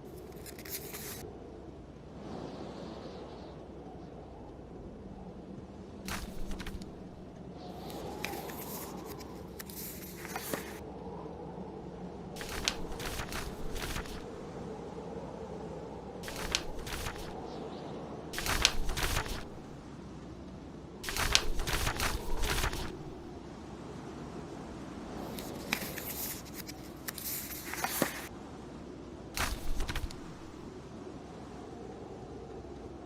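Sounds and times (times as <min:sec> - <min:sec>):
book pages rustling: 0:00.0 - 0:01.2, 0:06.1 - 0:10.8, 0:12.4 - 0:14.5, 0:16.2 - 0:17.4, 0:18.4 - 0:19.8, 0:21.0 - 0:23.3, 0:25.3 - 0:28.3, 0:29.4 - 0:30.7
blizzard wind: 0:00.0 - 0:33.0.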